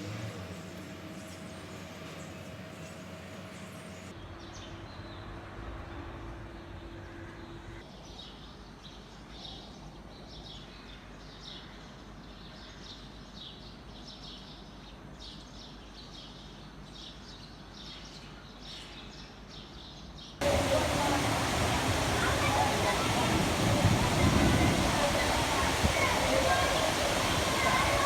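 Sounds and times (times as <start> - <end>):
birds chirping: 20.4 - 28.0
faint steady hum: 20.4 - 28.0.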